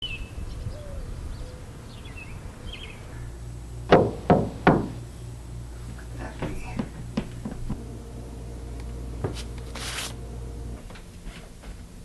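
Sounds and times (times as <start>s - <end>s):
sharp knocks: 3.9s - 5.0s.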